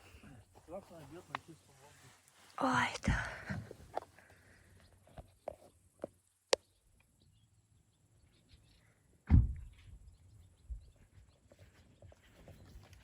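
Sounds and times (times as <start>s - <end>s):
heavy thump: 9.3s - 9.7s.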